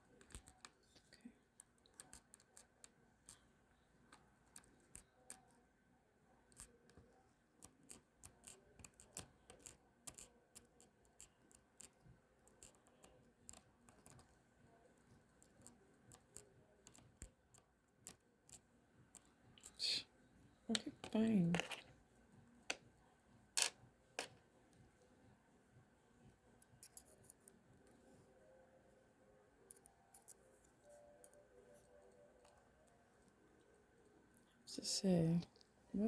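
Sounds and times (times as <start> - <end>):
ratchet mechanism clicks and taps: 7.6 - 14.3.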